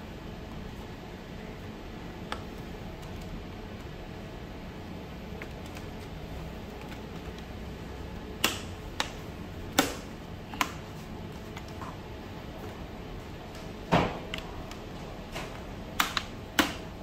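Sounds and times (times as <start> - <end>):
sharp plastic clicks: 8.4 - 10.8, 15.4 - 17.0.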